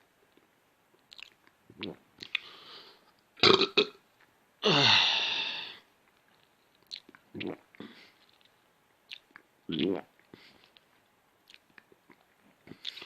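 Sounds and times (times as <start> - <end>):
person burping: 3.4 - 4.0, 4.6 - 5.7.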